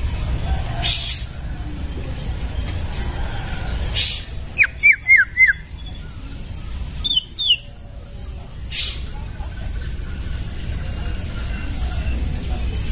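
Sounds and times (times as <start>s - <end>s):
low steady rumble: 0.0s - 12.9s
bird whistling: 4.0s - 7.7s.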